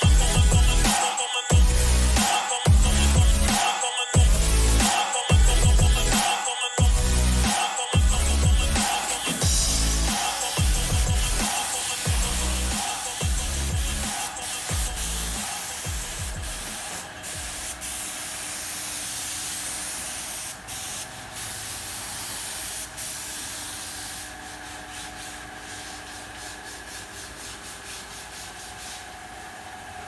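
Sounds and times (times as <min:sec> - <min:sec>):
paint spray gun hissing: 0:08.6 - 0:29.1.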